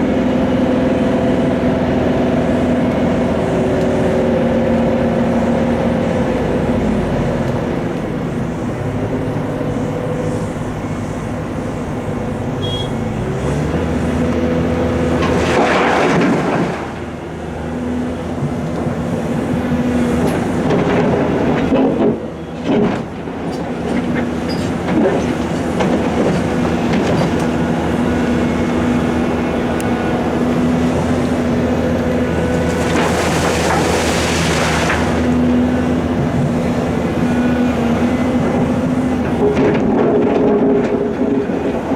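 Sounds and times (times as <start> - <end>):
heavy diesel engines running: 0.0 - 41.9
machinery rushing surges: 32.4 - 35.8.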